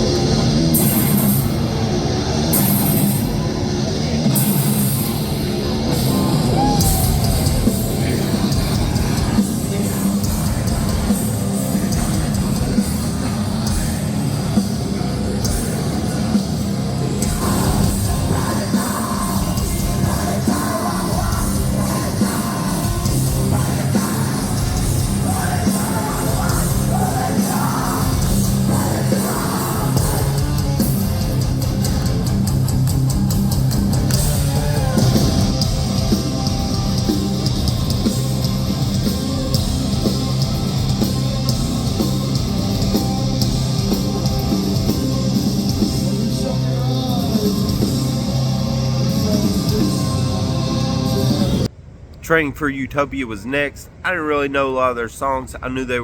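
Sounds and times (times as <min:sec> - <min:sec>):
distorted guitars: 0:00.0 - 0:52.2
drums: 0:00.0 - 0:53.0
person yelling vocals: 0:06.0 - 0:07.6.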